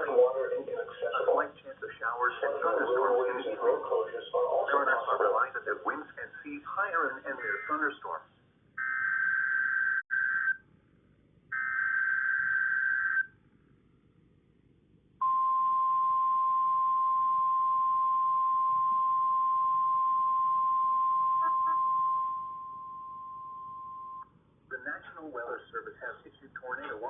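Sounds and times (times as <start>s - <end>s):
steady warning alarm tone: 11.5s - 13.3s, 15.2s - 24.3s.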